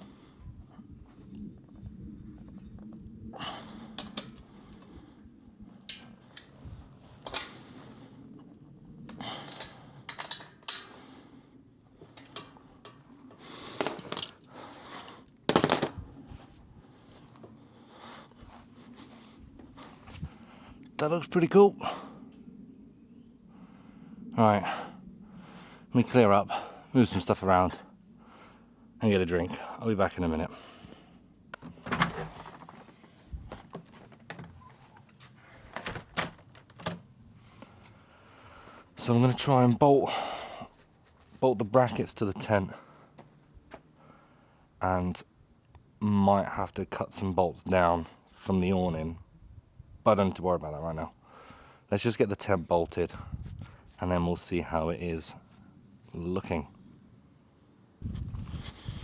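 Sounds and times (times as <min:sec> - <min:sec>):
metal hardware clinking: 0:03.6 - 0:04.5, 0:05.8 - 0:06.6, 0:07.2 - 0:07.6, 0:09.1 - 0:11.0, 0:12.0 - 0:16.4
tools knocking and clunking: 0:09.4 - 0:11.0, 0:12.0 - 0:16.2, 0:31.6 - 0:35.1.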